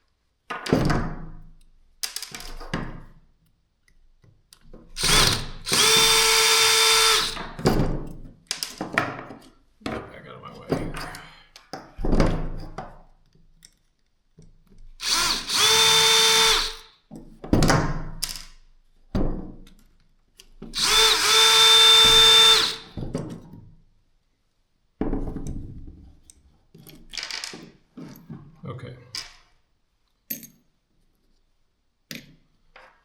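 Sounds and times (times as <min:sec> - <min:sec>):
knocks and clatter of drill handling: 0:04.6 - 0:10.1, 0:14.5 - 0:19.9, 0:20.5 - 0:23.7
cordless drill motor whining: 0:05.0 - 0:07.5, 0:15.0 - 0:16.9, 0:20.8 - 0:23.0.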